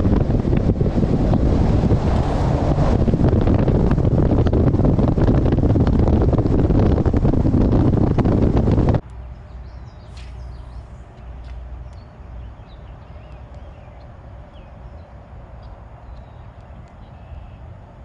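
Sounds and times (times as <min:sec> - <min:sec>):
wind buffeting microphone: 0:00.0 - 0:18.0
faint high chirps: 0:09.5 - 0:15.1.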